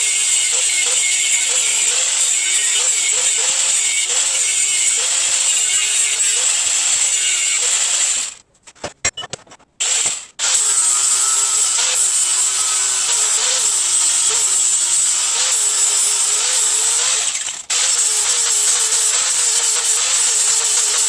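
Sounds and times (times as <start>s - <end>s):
power grinder whining on steel: 0.0s - 8.4s, 9.8s - 21.0s
sharp clicks and knocks: 8.7s - 10.3s.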